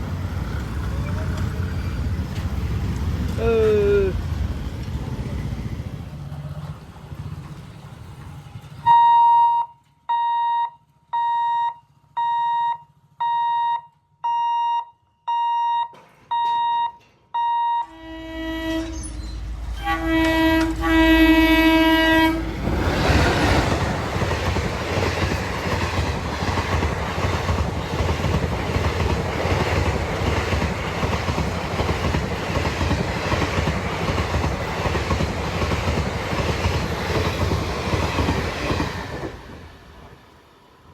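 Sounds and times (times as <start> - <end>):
train wheels clattering over rails: 0.0 - 8.9, 22.4 - 40.3
warning beeper: 8.9 - 20.2
locomotive horn blasts: 17.8 - 22.6.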